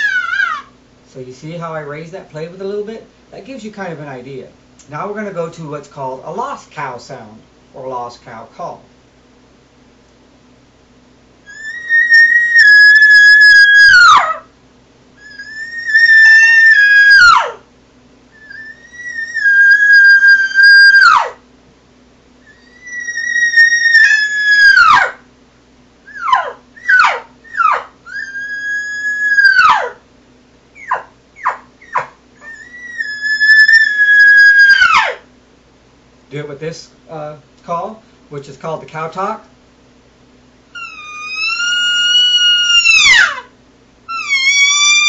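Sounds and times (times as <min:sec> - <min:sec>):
elk call mews: 0:00.0 - 0:00.7, 0:11.5 - 0:14.5, 0:15.2 - 0:17.6, 0:18.4 - 0:21.4, 0:22.4 - 0:25.2, 0:26.1 - 0:30.0, 0:30.8 - 0:35.3, 0:40.8 - 0:43.5, 0:44.1 - 0:45.0.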